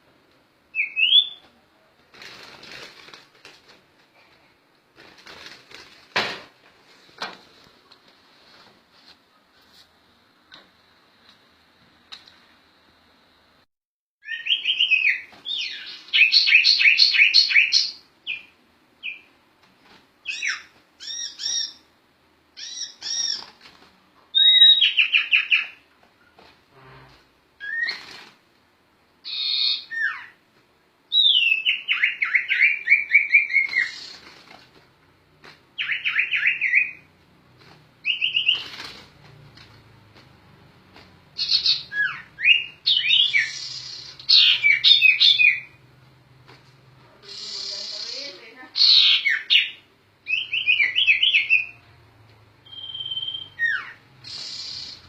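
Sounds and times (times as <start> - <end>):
songbird singing trills: 41.4 - 45.8, 47.2 - 51.8, 52.6 - 55.0.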